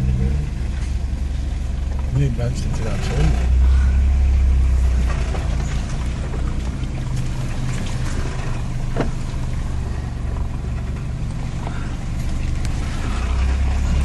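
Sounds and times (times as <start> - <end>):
vehicle engine droning at low revs: 0.0 - 14.0.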